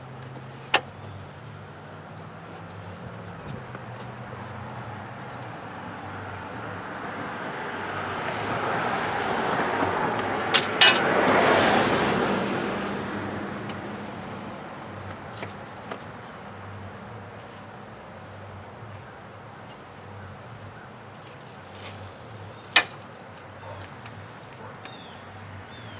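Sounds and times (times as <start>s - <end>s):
vehicle passing by: 1.4s - 15.3s.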